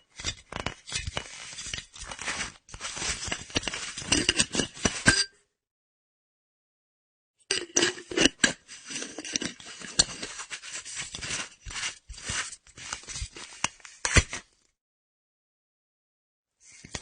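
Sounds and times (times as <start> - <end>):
metal screw cap scraping: 0.0 - 5.4, 7.5 - 14.4.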